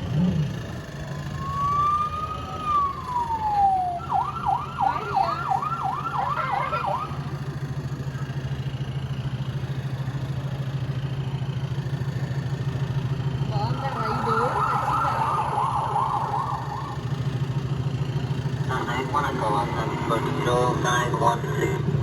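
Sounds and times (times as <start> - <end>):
electronic fire-engine siren: 0.7 - 7.5, 13.5 - 17.6.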